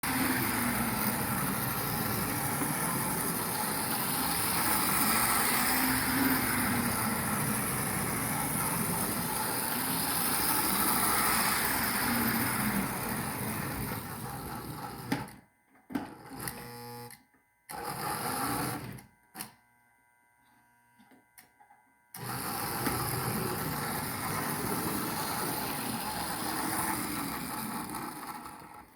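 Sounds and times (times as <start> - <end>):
model train motor whirring: 0.0 - 15.2, 22.2 - 28.9.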